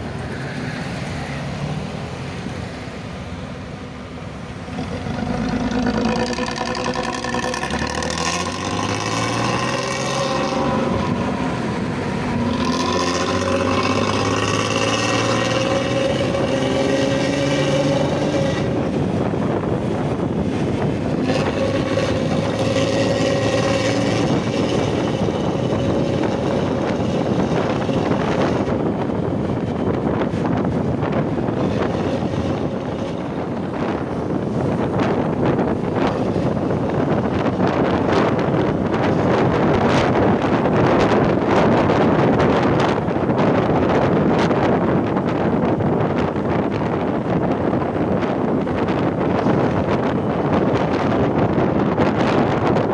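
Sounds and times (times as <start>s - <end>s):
wind noise on microphone: 0.0s - 52.9s
diesel engine snoring exhaust: 4.6s - 19.1s, 21.0s - 28.8s.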